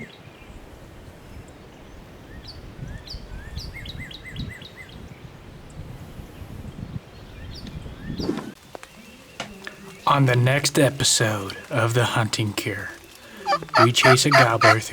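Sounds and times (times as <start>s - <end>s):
small birds chirping: 6.4s - 14.9s.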